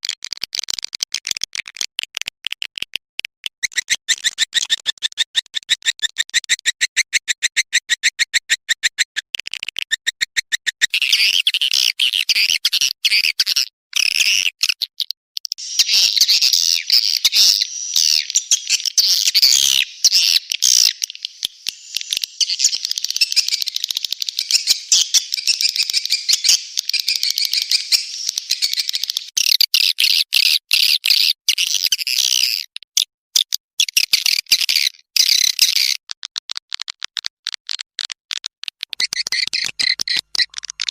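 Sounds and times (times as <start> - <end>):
swiftlets twittering in high chirps: 15.6 - 29.4.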